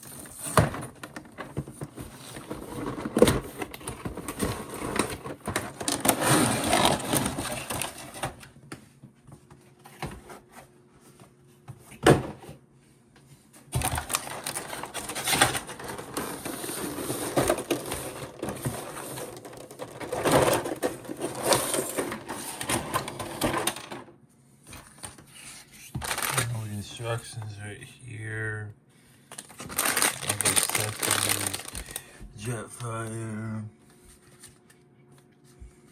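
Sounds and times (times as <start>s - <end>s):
cardboard and plastic rustling: 0.0s - 12.6s, 13.4s - 24.0s, 24.7s - 27.6s, 29.3s - 35.9s.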